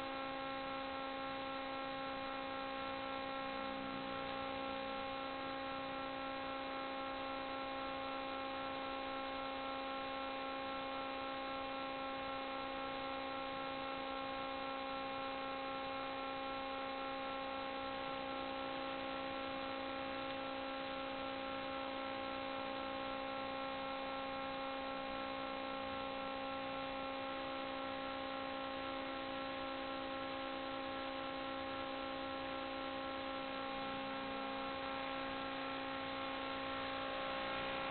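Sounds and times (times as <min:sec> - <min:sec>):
steady electrical hum: 0:00.0 - 0:37.9
low hiss: 0:32.3 - 0:37.9.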